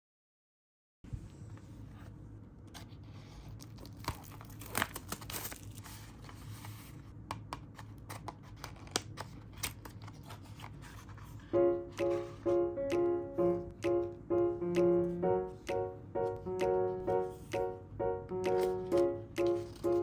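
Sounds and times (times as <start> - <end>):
packaging tearing and crinkling: 3.6 - 6.2
steady low hum: 11.0 - 20.0.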